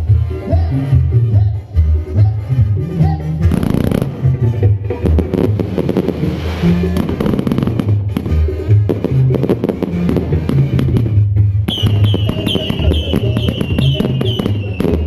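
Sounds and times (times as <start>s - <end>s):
background music with bass: 0.0s - 15.0s
fireworks crackling and popping: 3.5s - 4.3s, 4.9s - 15.0s
whistling firework warbling: 11.7s - 15.0s.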